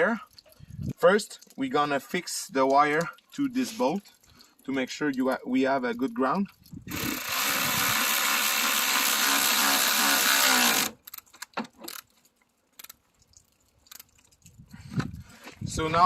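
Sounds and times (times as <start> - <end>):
power drill running: 6.9 - 11.0.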